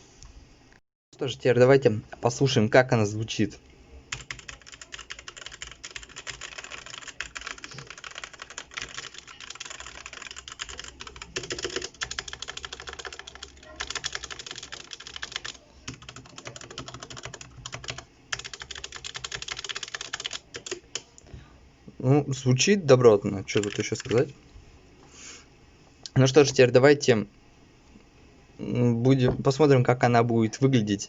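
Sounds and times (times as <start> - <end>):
fast typing on mechanical keyboard: 4.1 - 21.0, 23.5 - 24.3.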